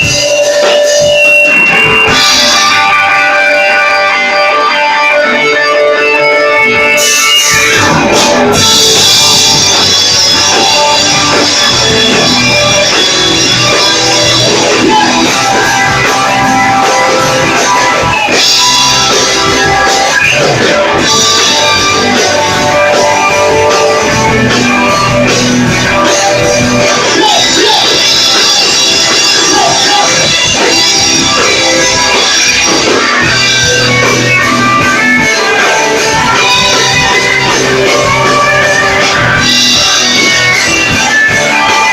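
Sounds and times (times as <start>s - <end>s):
rock band playing live: 0.0s - 41.9s.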